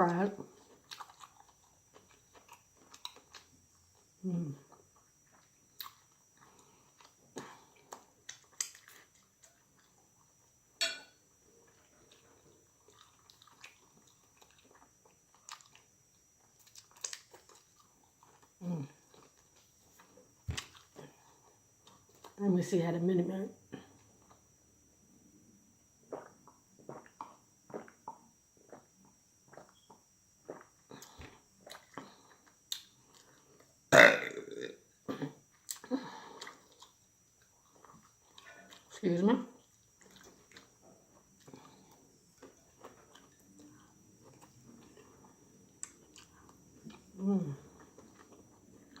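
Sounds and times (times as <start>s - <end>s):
chewing with wet smacks: 0.1s - 10.0s, 11.6s - 21.0s, 26.1s - 33.7s, 35.5s - 39.0s, 39.6s - 49.0s
person burping loudly: 33.9s - 35.4s
low throat sound: 33.9s - 36.1s.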